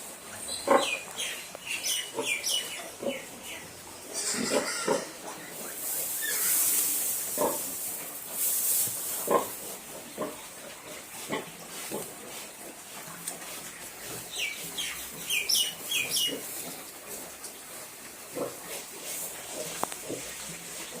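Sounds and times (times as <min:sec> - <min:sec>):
piglets grunting: 0:00.5 - 0:01.0, 0:02.0 - 0:07.8
bird chirping: 0:14.4 - 0:16.4.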